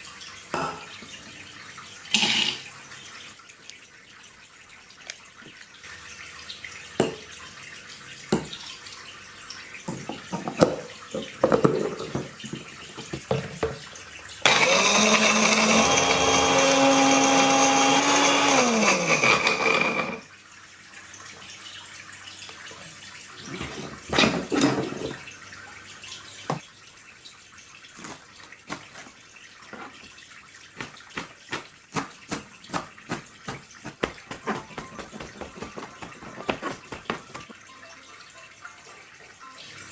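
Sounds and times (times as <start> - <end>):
kitchen utensils clattering: 2.1 - 2.7, 9.9 - 13.8, 23.4 - 25.2
electric blender motor whine: 14.4 - 20.3.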